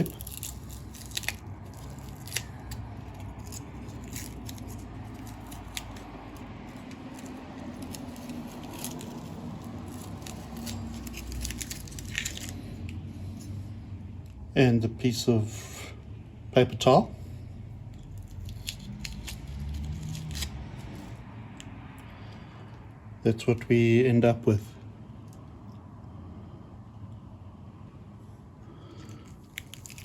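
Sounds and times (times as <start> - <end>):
masking tape peeling: 0.0 - 13.6, 18.1 - 21.2, 28.8 - 30.0.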